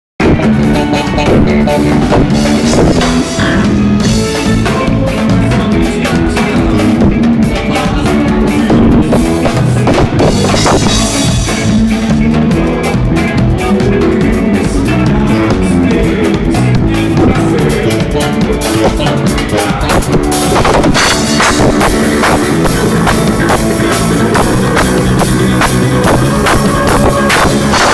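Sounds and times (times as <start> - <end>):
band playing loud music: 0.2 - 27.9.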